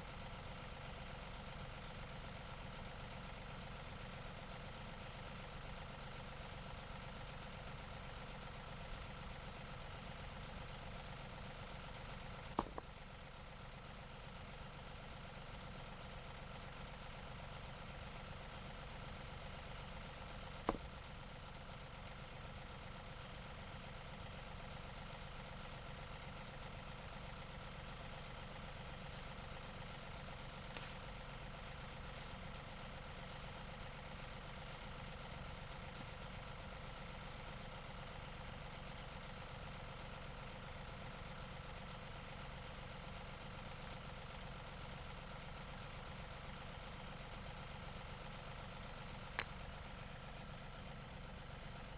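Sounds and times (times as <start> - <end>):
tractor engine running: 0.0 - 51.9
sharp knocks: 12.5 - 12.9.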